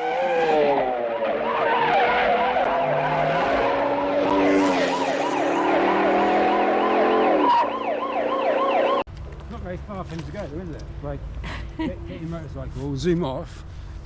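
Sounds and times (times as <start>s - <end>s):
siren yelping: 4.4s - 9.1s.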